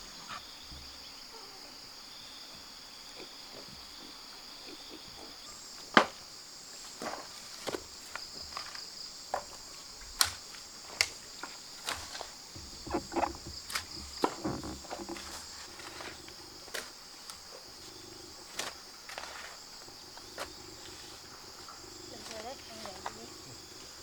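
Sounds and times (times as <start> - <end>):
high buzz of insects: 0.0 - 24.0
digging knocks and scrapes: 6.9 - 23.9.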